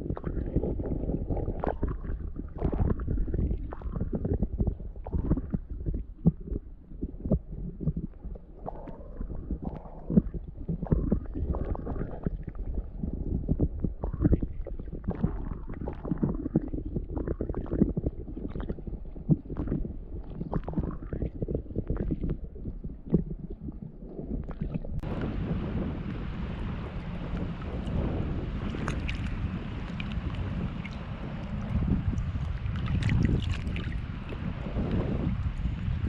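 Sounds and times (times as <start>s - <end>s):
wind buffeting microphone: 0.0s - 36.0s
waves slapping and splashing: 24.5s - 36.0s
steady wind hiss: 25.0s - 36.0s.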